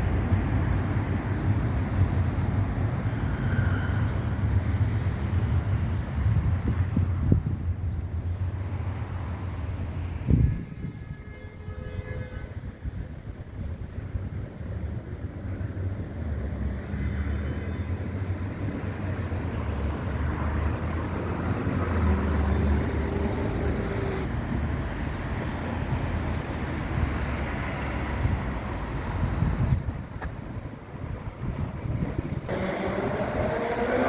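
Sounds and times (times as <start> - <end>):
train rumbling on rails: 19.7 - 34.0.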